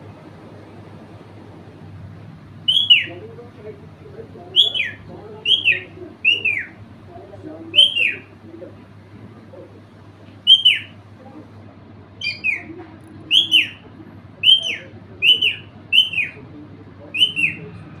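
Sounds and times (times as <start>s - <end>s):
parrot chirping: 2.6s - 3.3s, 4.4s - 6.8s, 7.7s - 8.8s, 10.4s - 11.1s, 12.2s - 16.4s, 17.1s - 17.8s.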